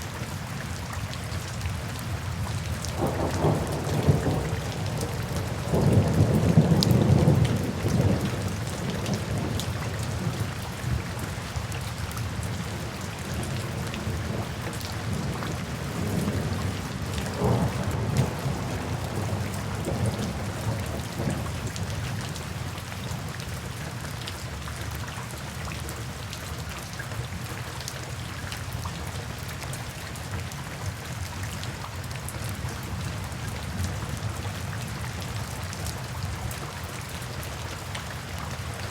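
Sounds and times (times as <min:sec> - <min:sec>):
steady rain falling: 0:00.0 - 0:38.9
rumble of thunder: 0:02.9 - 0:10.3, 0:13.4 - 0:21.9.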